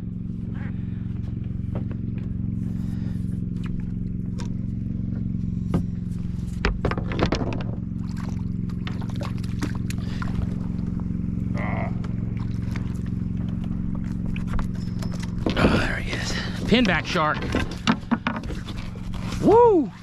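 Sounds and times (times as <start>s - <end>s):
boat engine humming: 0.0s - 20.0s
clatter: 3.5s - 10.0s.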